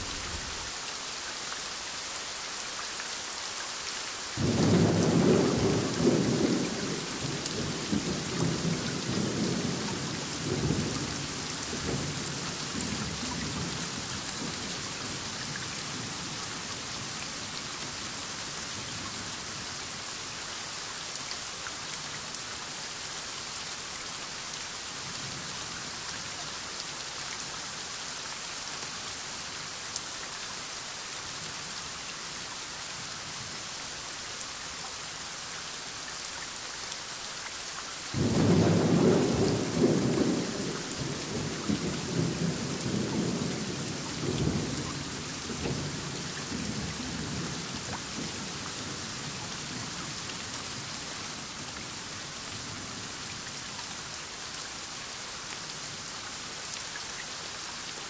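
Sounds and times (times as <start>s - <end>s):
thunder rumbling: 0.0s - 0.7s
heavy rain falling: 0.0s - 58.0s.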